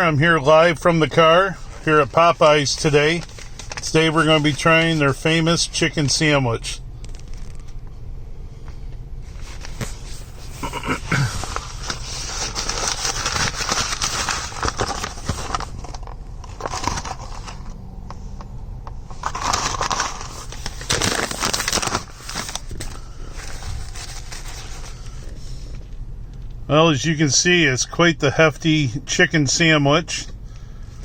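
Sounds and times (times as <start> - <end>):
sandwich wrapper crinkling: 1.0 - 6.2, 7.0 - 7.8, 9.4 - 17.8, 19.1 - 25.4.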